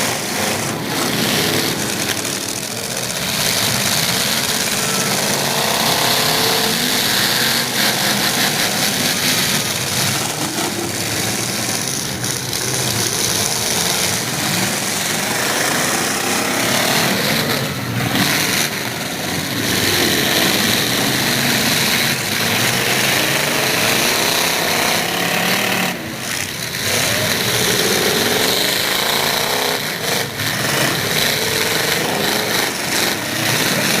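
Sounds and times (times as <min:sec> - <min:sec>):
truck engines revving: 0:00.0 - 0:34.0.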